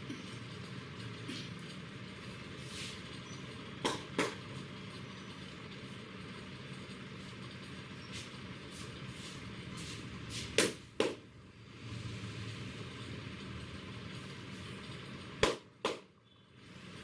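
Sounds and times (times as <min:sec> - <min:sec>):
hands brushing on head: 0:02.6 - 0:03.0, 0:08.1 - 0:10.6.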